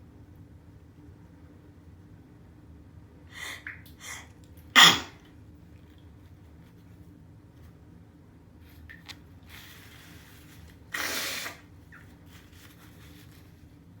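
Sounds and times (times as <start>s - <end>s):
person sneezing: 4.8s - 5.2s.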